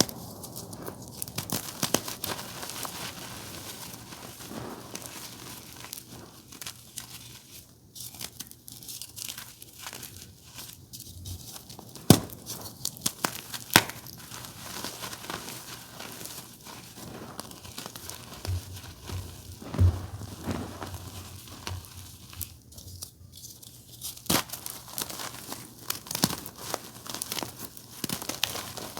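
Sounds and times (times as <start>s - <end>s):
chalk crumbling and crackling: 0.0s - 28.9s
chalk snapping: 11.8s - 15.4s.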